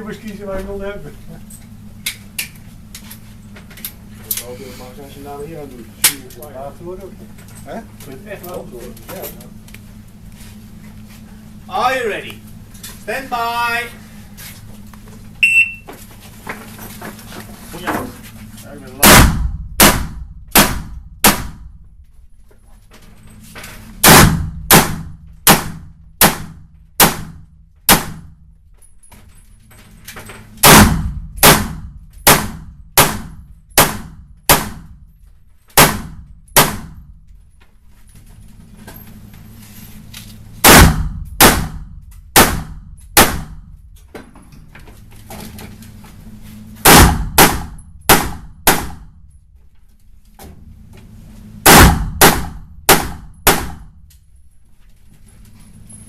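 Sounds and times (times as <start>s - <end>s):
rifle gunshots: 19.0s - 21.7s, 24.0s - 28.3s, 30.6s - 34.9s, 35.8s - 37.0s, 40.6s - 43.6s, 46.8s - 49.0s, 51.6s - 53.9s.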